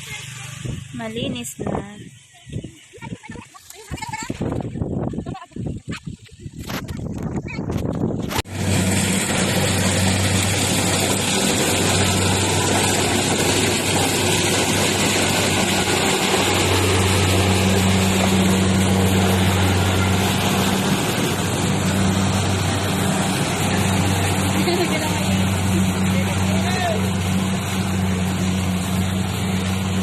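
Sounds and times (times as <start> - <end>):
harvesting machine engine running: 8.3 - 30.0.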